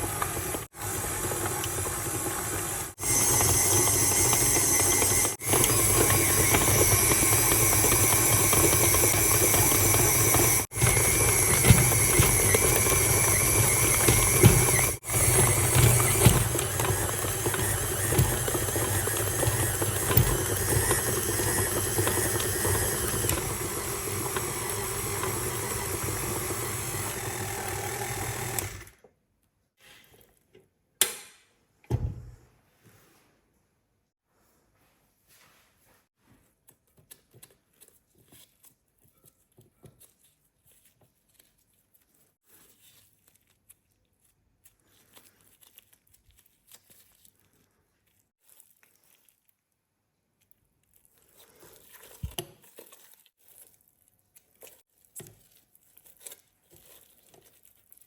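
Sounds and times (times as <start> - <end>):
stand mixer motor humming: 0.0 - 29.0.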